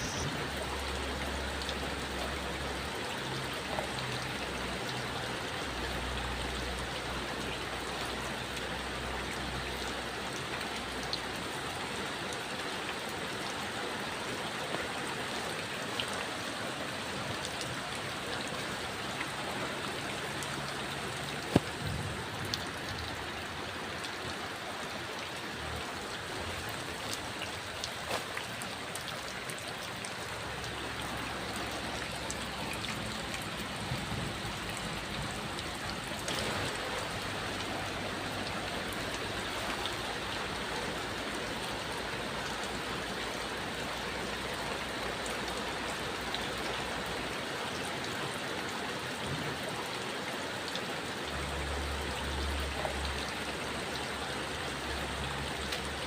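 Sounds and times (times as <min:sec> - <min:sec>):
heavy rain falling: 0:00.0 - 0:56.0
raindrops tapping: 0:20.4 - 0:23.2.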